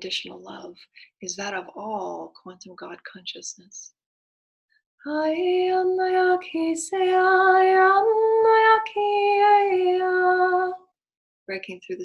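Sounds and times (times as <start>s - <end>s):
woman singing long tones: 5.1s - 10.8s.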